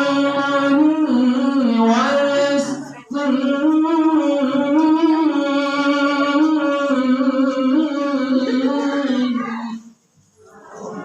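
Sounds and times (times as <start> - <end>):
person chanting recitation: 0.0 - 11.0.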